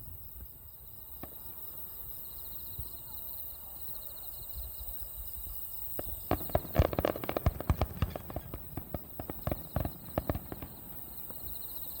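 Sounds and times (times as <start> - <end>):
distant fireworks bursting: 0.3 - 3.0, 5.8 - 12.0.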